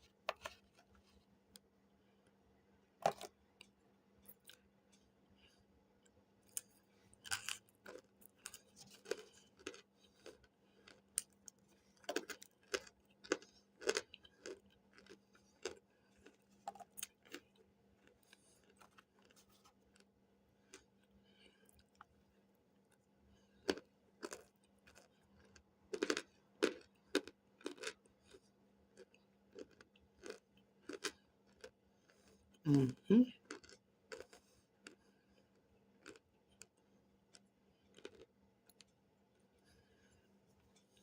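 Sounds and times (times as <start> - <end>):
dry crunchy chewing: 6.4 - 22.1, 22.9 - 32.4, 33.5 - 38.9.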